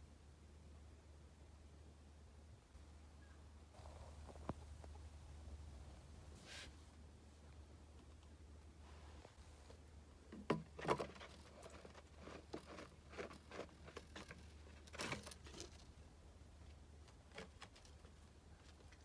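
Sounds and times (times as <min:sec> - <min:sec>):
steady low hum: 0:00.0 - 0:10.3.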